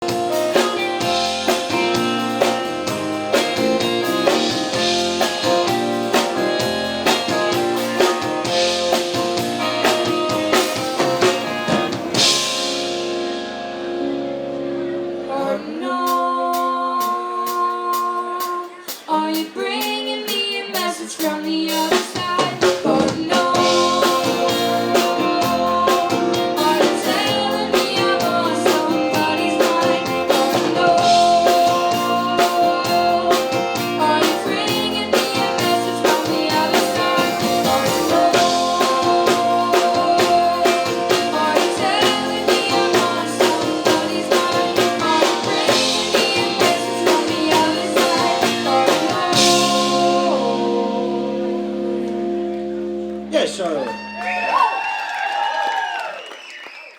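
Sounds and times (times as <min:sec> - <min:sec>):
live band playing: 0:00.0 - 0:54.6
woman singing: 0:15.3 - 0:52.1.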